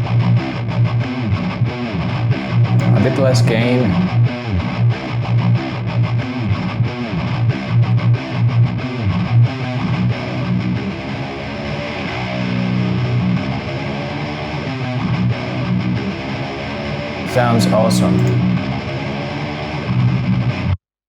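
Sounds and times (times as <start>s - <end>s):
distorted electric guitars chugging: 2.7s - 4.2s.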